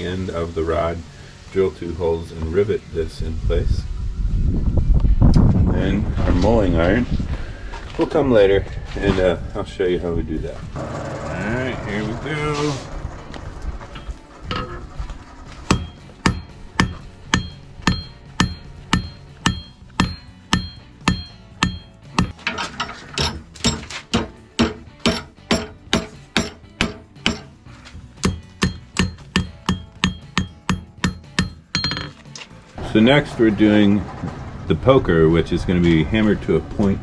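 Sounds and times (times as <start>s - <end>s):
hammer ringing on anvil: 15.7s - 22.3s, 23.2s - 27.5s, 28.2s - 32.1s.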